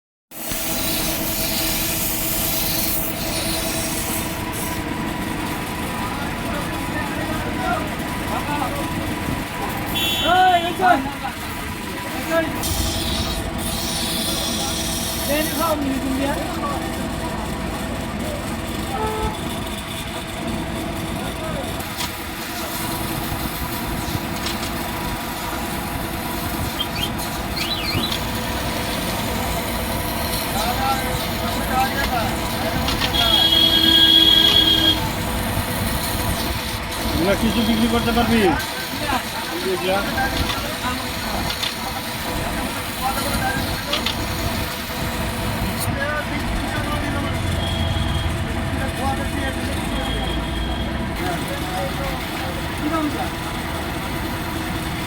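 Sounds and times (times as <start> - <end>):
blade grinding hiss: 0.4 - 4.9, 12.1 - 15.8, 22.0 - 45.9
sharpening wheel motor hum: 0.4 - 7.4, 9.6 - 17.5, 18.8 - 48.5.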